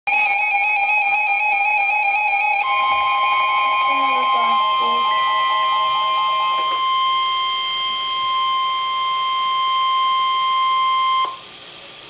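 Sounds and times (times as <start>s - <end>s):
steady electronic alert tone: 2.6s - 10.0s.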